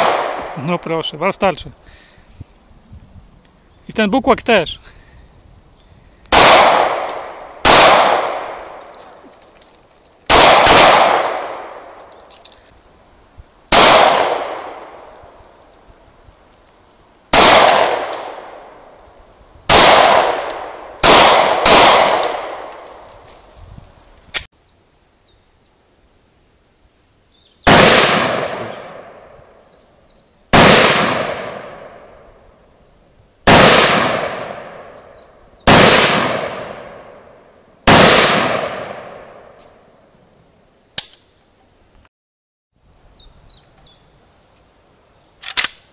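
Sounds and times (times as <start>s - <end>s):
pistol shots: 0.0s - 0.6s, 6.3s - 8.8s, 10.3s - 11.9s, 13.7s - 15.0s, 17.3s - 18.6s, 19.7s - 22.7s, 27.7s - 29.3s, 30.5s - 32.1s, 33.5s - 35.0s, 35.7s - 37.2s, 37.8s - 39.6s
rifle shots echoing: 0.0s - 0.8s, 6.3s - 9.2s, 10.3s - 12.0s, 13.7s - 15.2s, 17.3s - 18.8s, 19.7s - 23.0s, 27.7s - 29.4s, 30.5s - 32.3s, 33.4s - 35.0s, 35.6s - 39.6s.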